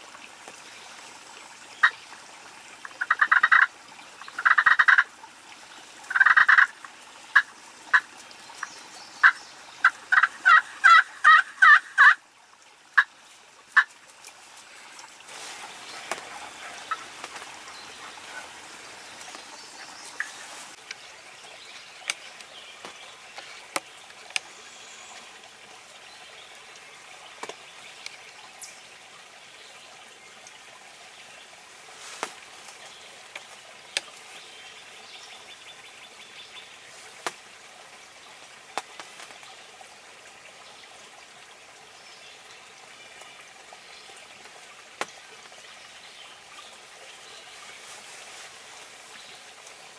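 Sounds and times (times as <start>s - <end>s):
steady hiss: 12.9s - 25.2s.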